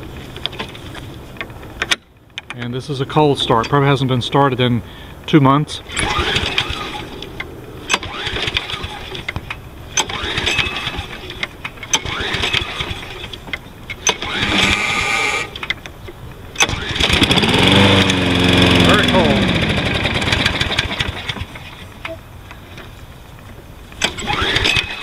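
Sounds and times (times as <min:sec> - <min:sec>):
lawn mower engine running unevenly: 0:04.9 - 0:25.0
recoil starter pulls: 0:05.9 - 0:22.9, 0:23.9 - 0:25.0.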